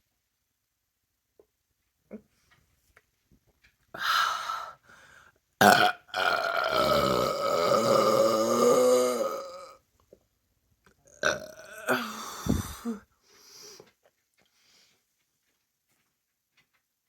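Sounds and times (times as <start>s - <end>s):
woman burping: 5.6s - 9.8s, 11.1s - 13.0s.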